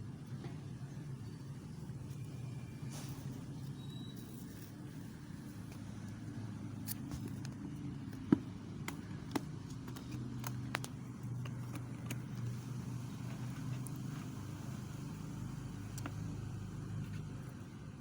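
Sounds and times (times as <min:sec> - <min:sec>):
low engine-like hum: 0:00.0 - 0:18.0
light clicks and taps: 0:06.9 - 0:12.6.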